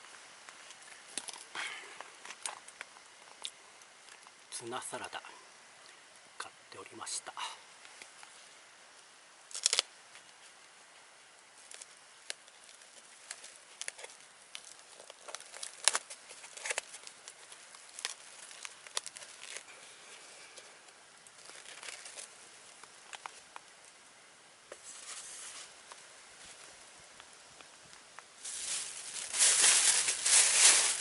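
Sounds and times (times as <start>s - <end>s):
plastic food pack crinkling: 9.5s - 9.9s, 11.6s - 19.7s, 21.2s - 23.7s, 28.4s - 31.0s.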